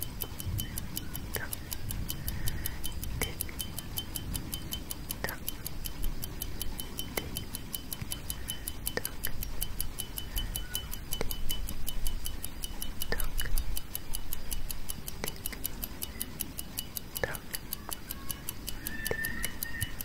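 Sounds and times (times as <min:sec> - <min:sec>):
clock ticking: 0:00.0 - 0:20.0.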